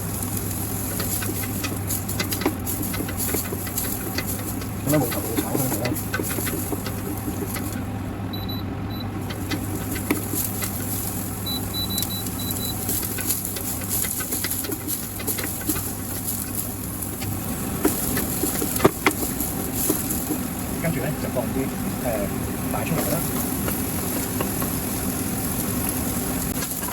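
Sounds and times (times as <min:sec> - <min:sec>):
onions sizzling in oil: 0:00.0 - 0:26.9
steady low hum: 0:00.0 - 0:26.9
utensil knocking against pot: 0:23.2 - 0:24.8.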